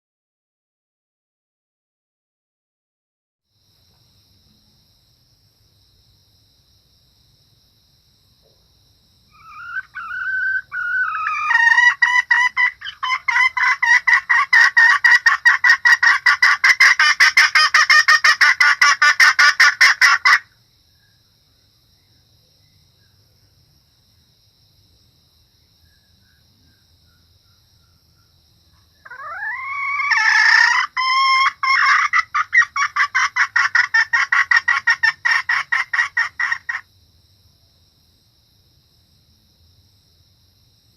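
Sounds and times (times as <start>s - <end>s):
faint insect-like whine: 3.5s - 40.9s
junglefowl cackling call: 9.3s - 20.5s, 29.0s - 36.9s.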